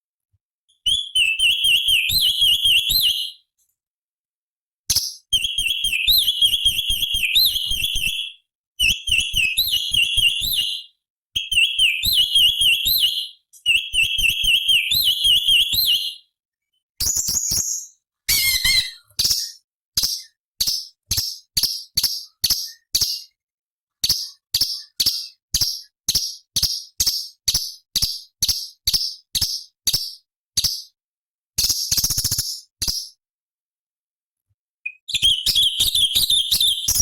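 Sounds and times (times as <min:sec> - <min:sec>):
bird singing whistled notes: 0:00.7 - 0:03.5, 0:04.9 - 0:23.4, 0:34.8 - 0:37.0
sharp bird calls: 0:17.0 - 0:23.4, 0:34.9 - 0:37.0.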